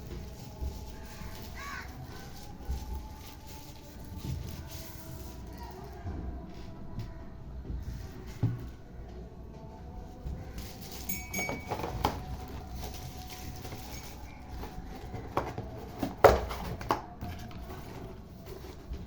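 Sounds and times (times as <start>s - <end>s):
knocks of objects handled: 10.2s - 19.0s.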